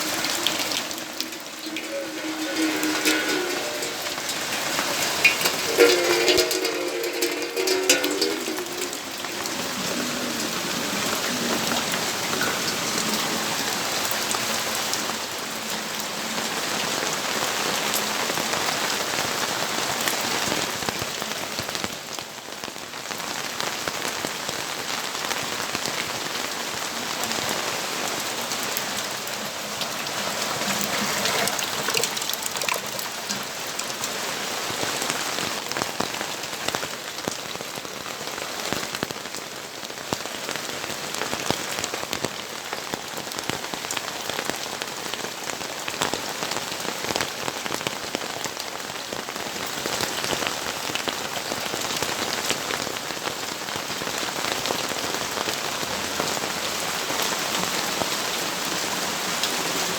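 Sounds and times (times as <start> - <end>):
raindrops ticking on surfaces: 0.0 - 59.9
steady rain hiss: 0.0 - 59.9.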